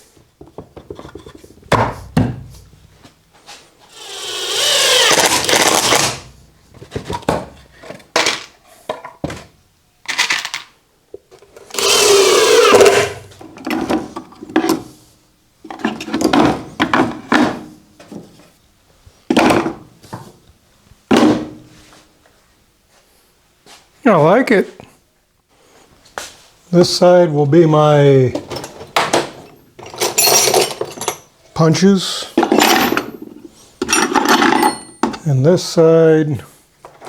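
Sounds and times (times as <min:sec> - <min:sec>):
power tool whirring: 0:03.9 - 0:06.3, 0:11.7 - 0:13.3.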